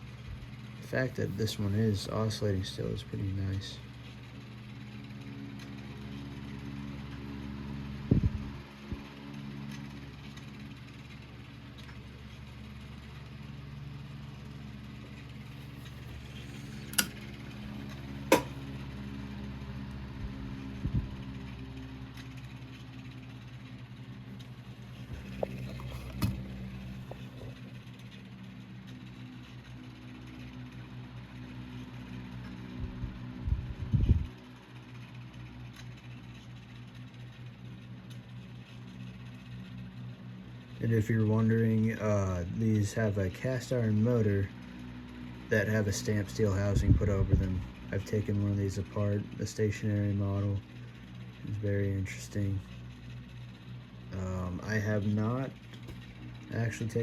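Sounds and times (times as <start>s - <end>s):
electric fan humming: 0.0s - 28.9s, 44.3s - 57.0s.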